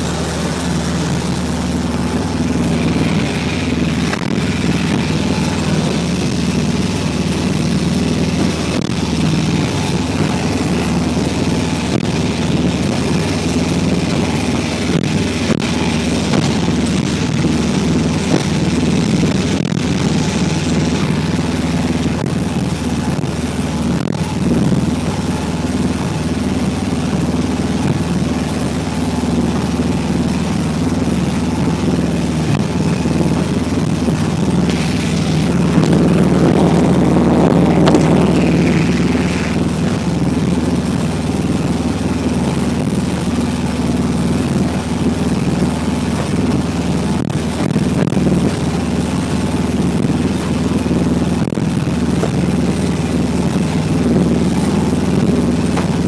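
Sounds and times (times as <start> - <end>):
boat engine droning: 0.0 - 56.0.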